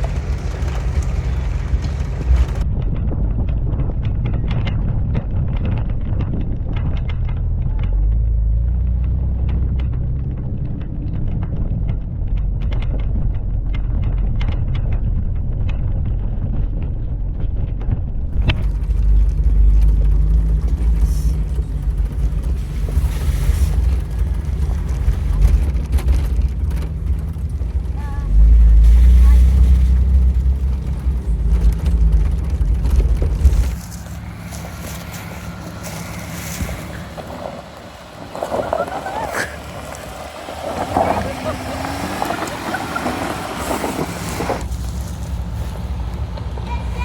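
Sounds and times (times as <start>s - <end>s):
car interior rattling: 0.0s - 2.6s, 18.2s - 47.0s
car engine and tyre rumble: 0.0s - 47.0s.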